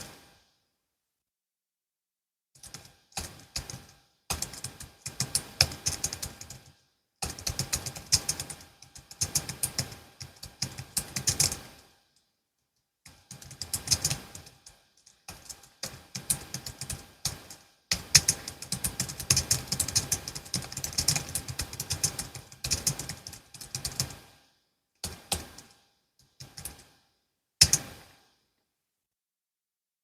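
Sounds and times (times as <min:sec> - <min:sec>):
keyboard typing: 0:02.6 - 0:11.8, 0:13.1 - 0:24.3, 0:25.0 - 0:25.8, 0:26.4 - 0:26.9, 0:27.6 - 0:28.0.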